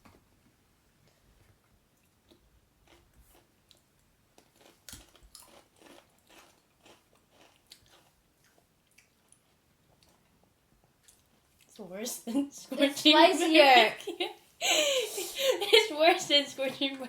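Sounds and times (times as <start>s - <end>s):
people crunching potato crisps: 2.1s - 10.3s.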